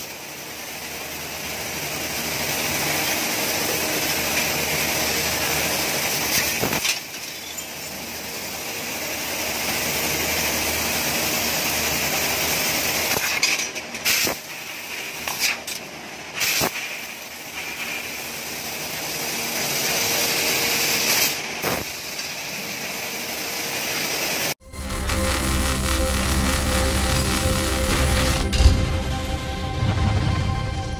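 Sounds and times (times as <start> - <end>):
hiss of laser cutter assist gas: 0.0 - 28.5
short sharp gas bursts: 16.4 - 18.3.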